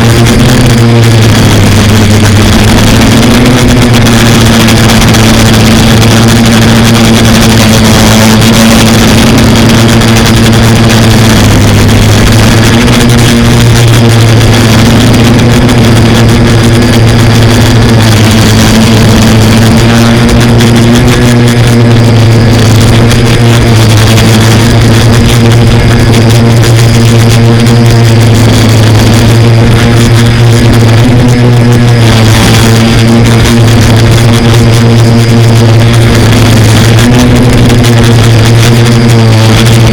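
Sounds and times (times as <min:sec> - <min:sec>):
quadcopter propellers humming: 0:00.0 - 0:39.9.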